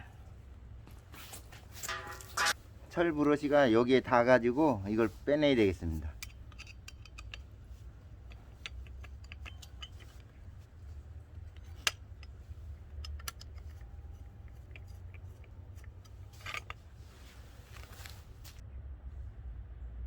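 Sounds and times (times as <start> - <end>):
low steady hum: 0.0 - 20.0
metallic clicks and scrapes: 1.3 - 2.6, 4.8 - 18.6.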